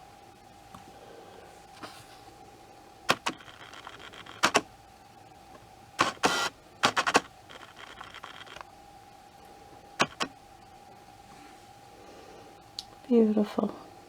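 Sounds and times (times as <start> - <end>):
faint high whir: 0.2 - 14.0
sharp clicks: 3.1 - 4.7, 6.0 - 8.7, 10.0 - 10.4.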